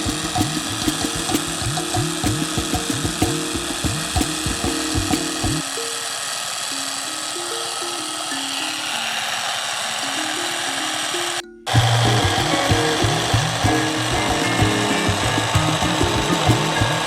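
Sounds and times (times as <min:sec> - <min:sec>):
pulsing bass beat: 0:00.0 - 0:05.6, 0:11.7 - 0:17.0
simple melody of held notes: 0:00.0 - 0:17.0.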